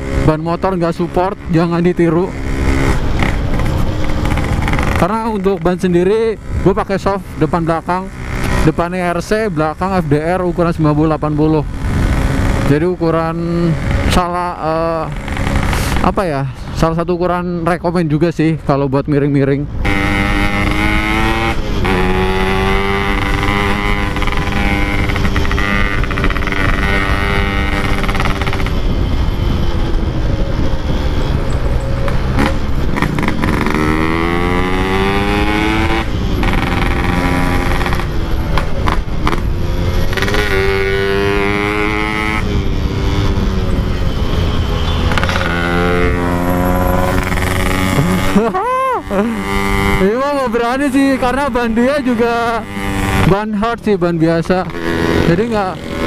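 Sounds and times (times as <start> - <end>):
motorcycle engine revving: 0.0 - 16.4, 19.7 - 56.0
wind noise: 19.6 - 50.6.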